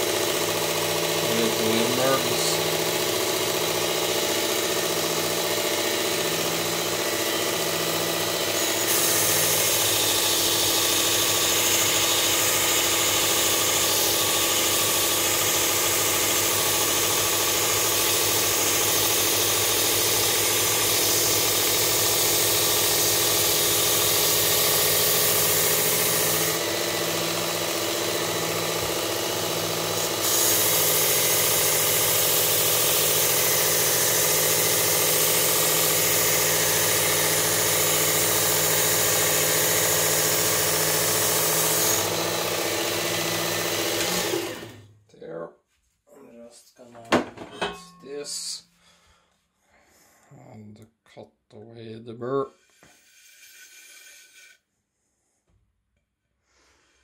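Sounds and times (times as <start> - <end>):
belt sharpener motor humming: 0.0 - 44.8.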